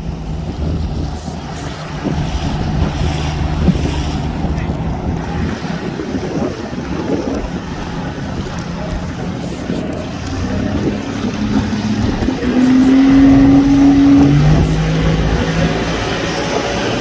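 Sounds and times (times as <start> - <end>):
motorboat engine running: 0.0 - 17.0
rushing noise: 0.0 - 17.0.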